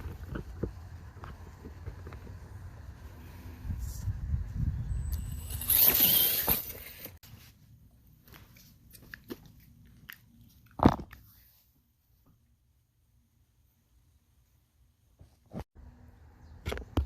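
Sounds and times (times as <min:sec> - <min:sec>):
wind rumbling on microphone: 0:00.0 - 0:05.7.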